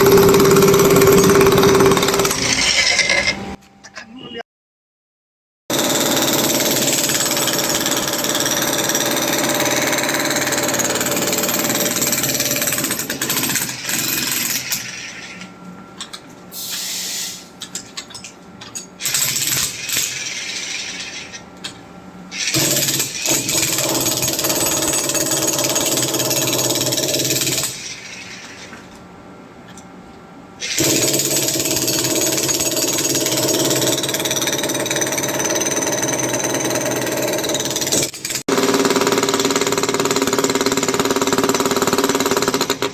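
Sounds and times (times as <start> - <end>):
demolition hammer chiselling concrete: 0.0 - 2.7, 5.7 - 15.2, 19.0 - 21.4, 22.4 - 27.9, 30.6 - 42.9.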